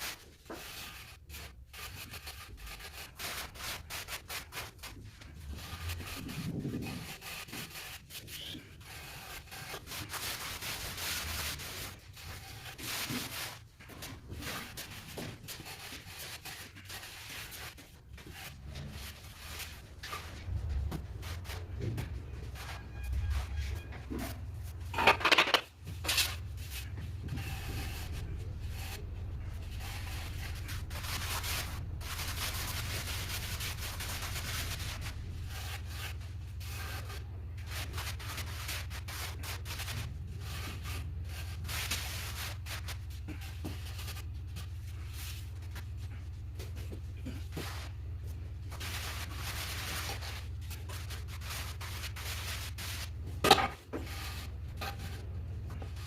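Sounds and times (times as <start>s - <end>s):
trowel scraping mortar: 25.0s - 44.2s
steady low hum: 25.7s - 56.0s.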